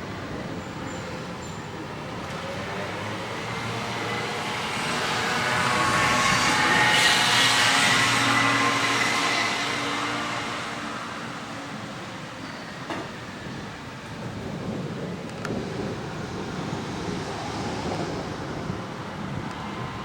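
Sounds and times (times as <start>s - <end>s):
vehicle passing by: 2.2s - 12.4s.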